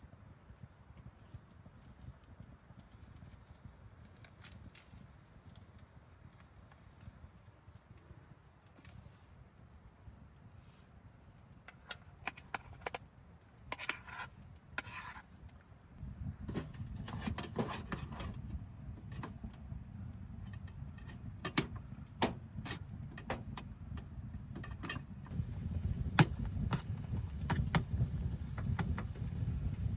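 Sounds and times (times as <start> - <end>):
steady low rumble: 25.2 - 29.9.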